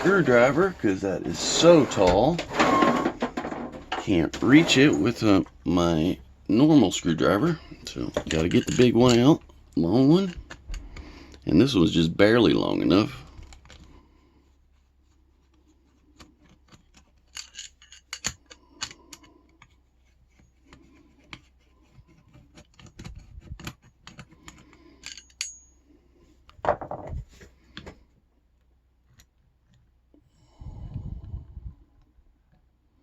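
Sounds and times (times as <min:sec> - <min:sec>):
screwdriver clicking and scraping metal: 0:07.0 - 0:11.4, 0:15.5 - 0:25.8.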